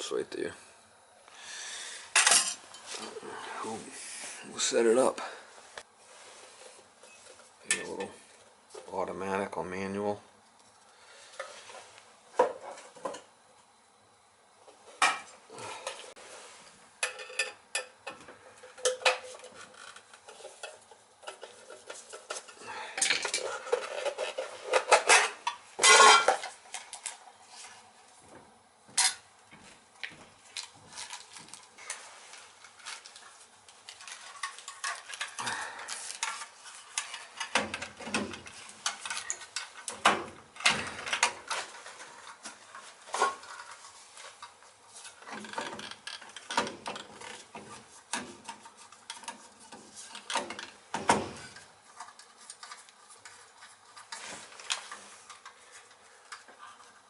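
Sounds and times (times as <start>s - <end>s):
metal tools clinking and rattling: 21.3s - 26.5s.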